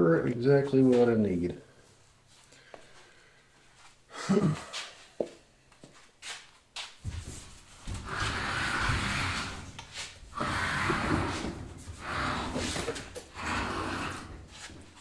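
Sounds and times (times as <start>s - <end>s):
scraping and rubbing: 7.3s - 15.0s.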